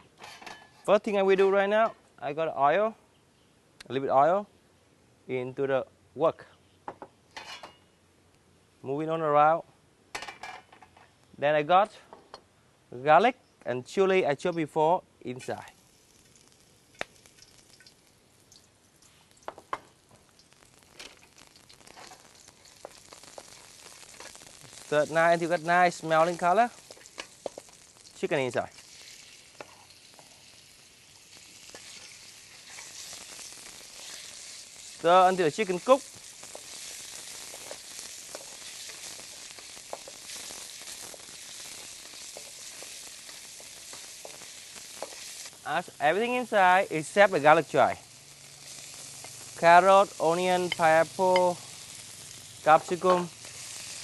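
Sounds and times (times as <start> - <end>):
garlic sizzling in a wok: 7.3 - 7.8, 14.0 - 54.0.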